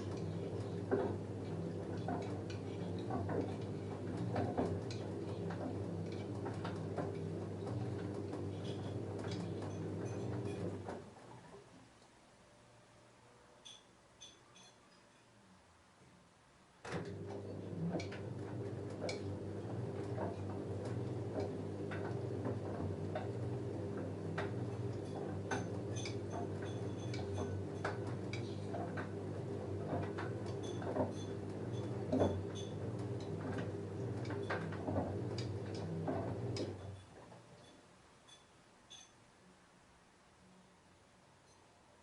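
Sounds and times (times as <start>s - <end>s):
washing machine drum turning: 0.0s - 11.0s, 16.9s - 37.0s.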